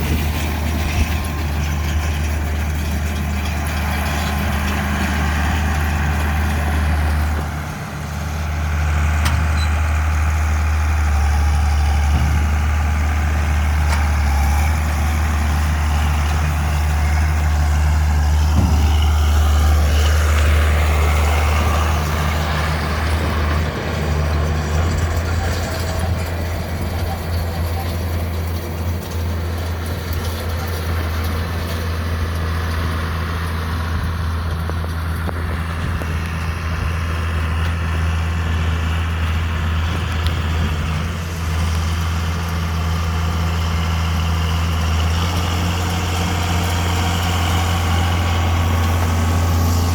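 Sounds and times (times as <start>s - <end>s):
tractor engine running: 0.0s - 49.9s.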